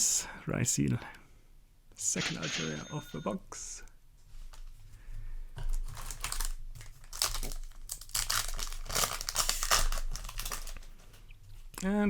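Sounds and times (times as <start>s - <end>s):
foil wrapper crinkling: 5.6s - 11.2s.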